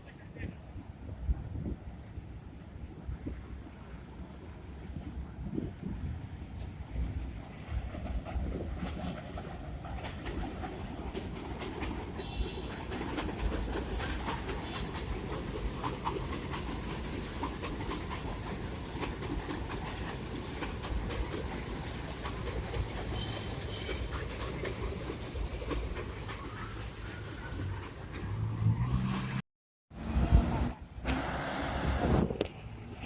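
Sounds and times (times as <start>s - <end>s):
subway train rumbling: 0.0s - 33.0s
wheels clicking over rail joints: 6.5s - 28.5s
wheel squeal: 23.1s - 24.1s.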